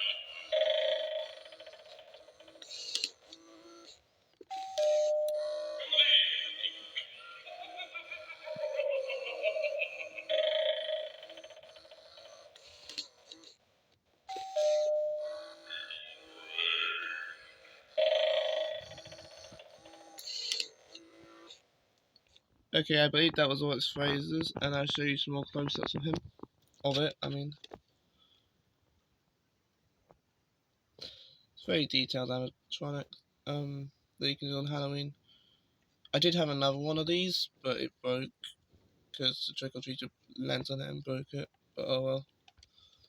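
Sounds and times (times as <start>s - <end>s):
doorbell chimes: 4.5s - 5.8s, 14.3s - 15.8s
spooky recorded voice phrases: 5.8s - 9.8s, 15.6s - 17.5s
steady held electronic tone: 14.3s - 20.6s.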